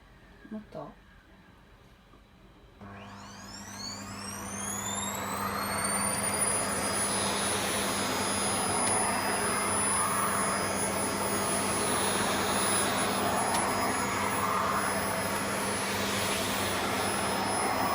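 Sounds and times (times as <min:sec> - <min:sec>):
vacuum cleaner motor whine: 0:02.8 - 0:17.9
rush of suction air: 0:06.1 - 0:17.9.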